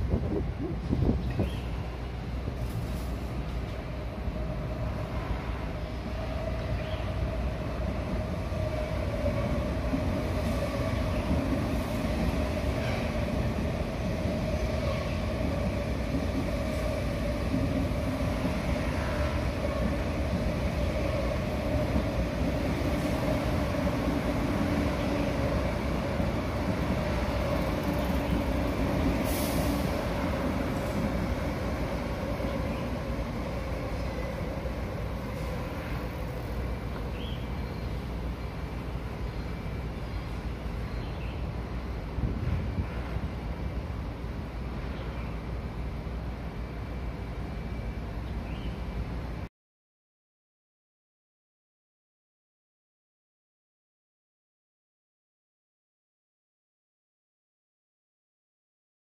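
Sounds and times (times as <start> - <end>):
short hiss: 29.2 - 29.9.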